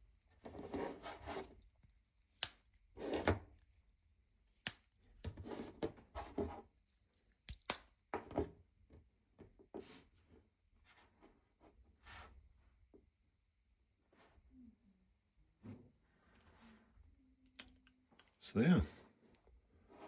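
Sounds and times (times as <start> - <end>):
sharp knife clicks: 2.4 - 2.6, 7.5 - 7.9.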